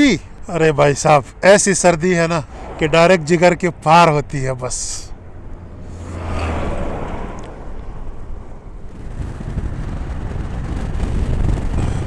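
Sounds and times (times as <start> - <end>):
motorcycle engine drone: 5.2 - 12.0
wind buffeting microphone: 6.2 - 12.0.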